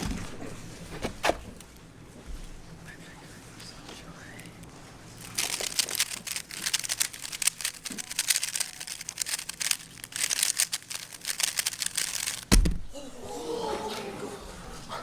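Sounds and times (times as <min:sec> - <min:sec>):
puzzle cube plastic clicks: 0:05.2 - 0:12.8
loud thump: 0:12.5 - 0:13.0.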